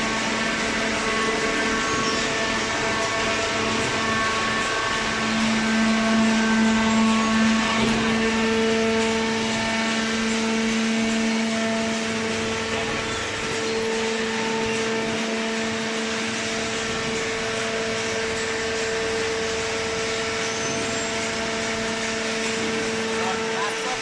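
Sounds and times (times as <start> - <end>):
hydraulic power unit humming: 0.0 - 24.0.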